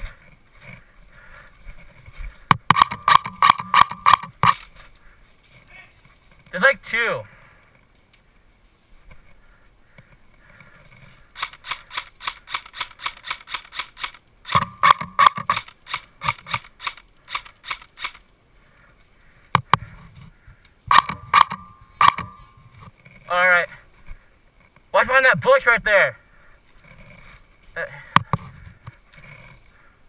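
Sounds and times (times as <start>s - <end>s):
airsoft rifle shots: 2.5s - 4.7s, 11.4s - 18.2s.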